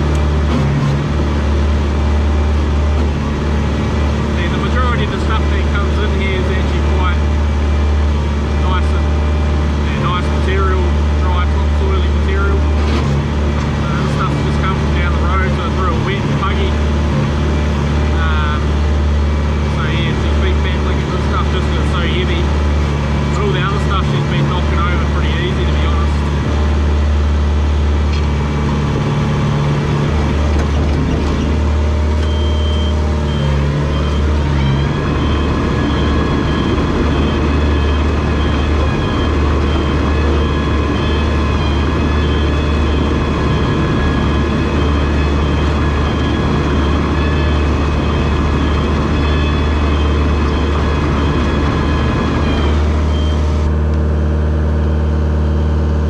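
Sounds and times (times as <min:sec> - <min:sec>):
bulldozer diesel engine revving: 0:00.0 - 0:56.0
high-pitched beeping alarm: 0:32.2 - 0:53.7.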